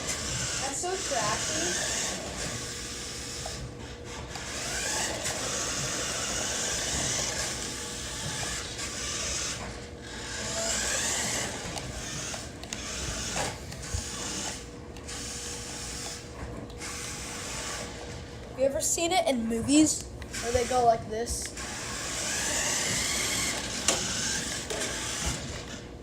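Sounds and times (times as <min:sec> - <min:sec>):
toy car electric motor whirring: 0:00.0 - 0:18.4, 0:19.6 - 0:26.0.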